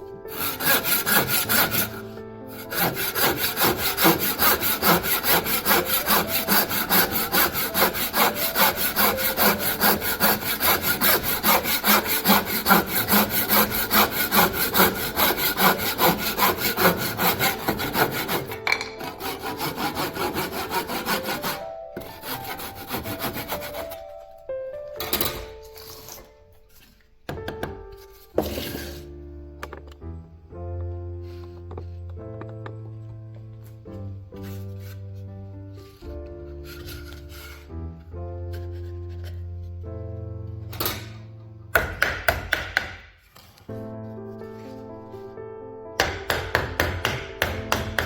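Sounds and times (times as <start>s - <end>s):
saw cutting wood: 0.3s - 24.1s, 28.4s - 29.1s, 46.0s - 48.0s.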